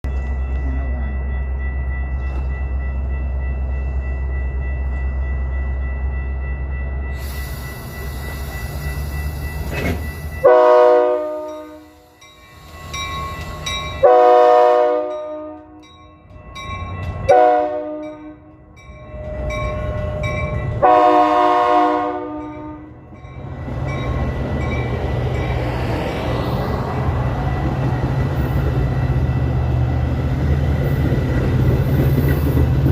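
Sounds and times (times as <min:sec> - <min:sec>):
air hiss: 0:07.2 - 0:10.3
train air horn blasts: 0:10.4 - 0:12.2, 0:14.0 - 0:15.8, 0:17.3 - 0:18.4, 0:20.8 - 0:23.0.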